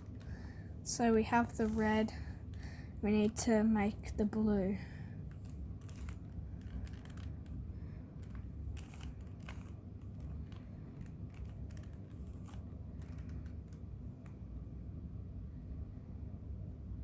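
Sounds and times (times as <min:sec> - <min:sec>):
low steady hum: 0:00.0 - 0:17.0
puzzle cube layers clicking: 0:05.3 - 0:07.6, 0:08.2 - 0:13.8.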